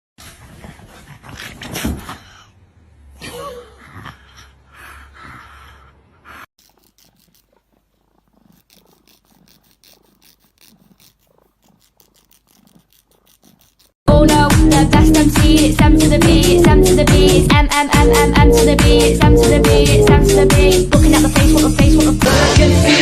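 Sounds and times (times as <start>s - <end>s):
rustling: 6.6s - 14.0s.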